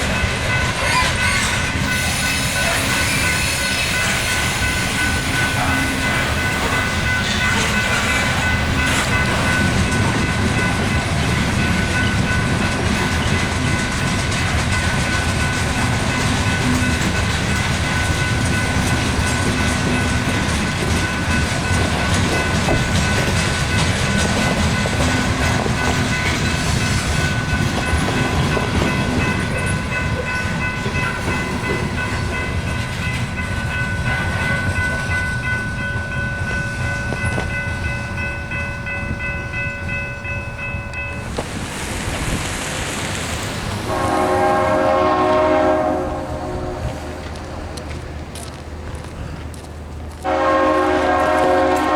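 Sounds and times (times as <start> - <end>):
freight train rumbling on rails: 0.0 - 51.9.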